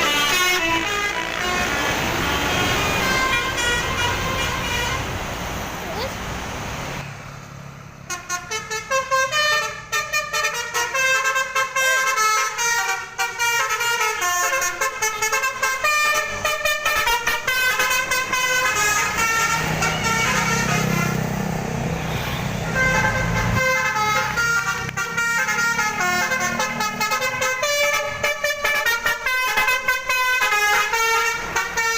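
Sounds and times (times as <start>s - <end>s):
musical air horn playing fast tune: 0.0s - 5.0s, 22.6s - 31.9s.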